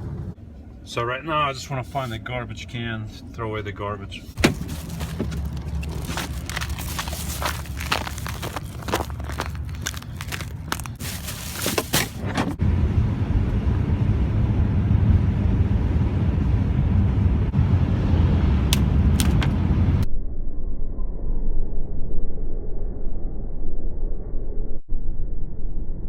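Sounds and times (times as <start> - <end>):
van road rumble: 0.0 - 20.1
footsteps crunching on snow: 4.3 - 12.6.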